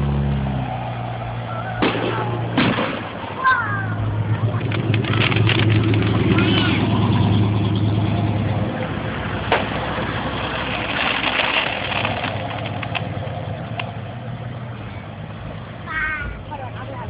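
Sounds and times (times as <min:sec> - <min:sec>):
vehicle engine running: 0:03.5 - 0:17.0.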